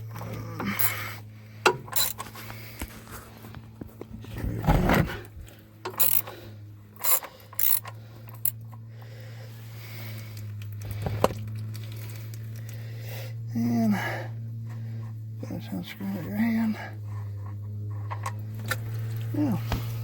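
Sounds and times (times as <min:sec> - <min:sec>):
steady low hum: 0:00.0 - 0:20.0
socket ratchet clicking: 0:05.9 - 0:06.3, 0:07.0 - 0:08.6.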